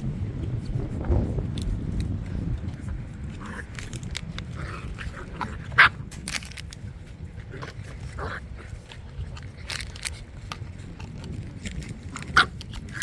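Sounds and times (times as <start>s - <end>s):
dogs yipping and barking: 4.4s - 6.3s, 12.2s - 13.0s.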